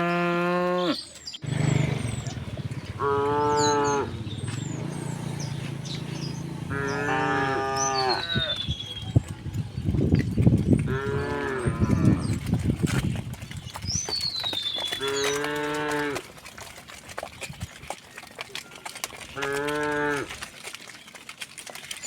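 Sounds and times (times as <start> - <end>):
cows mooing: 0.0 - 8.7, 10.8 - 12.7, 14.9 - 16.6, 18.7 - 20.5.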